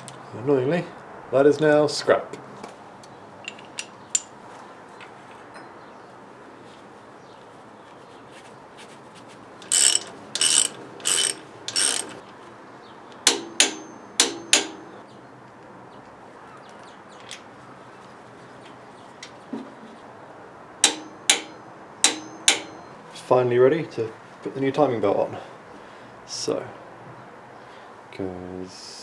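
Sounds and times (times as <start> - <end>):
ratchet wrench clicking: 9.6 - 12.2, 13.3 - 15.0, 20.8 - 22.9.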